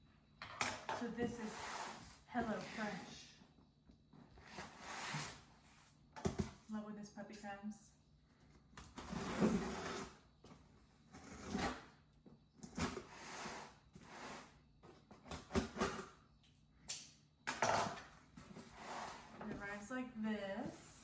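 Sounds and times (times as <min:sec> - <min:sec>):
cardboard box scraping and rustling: 0:09.0 - 0:10.2.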